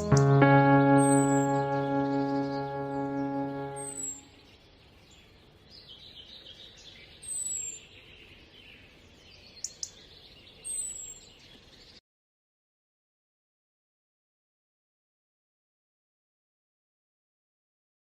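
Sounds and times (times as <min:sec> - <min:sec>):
background music: 0:00.0 - 0:04.3
bird chirping: 0:00.0 - 0:12.0.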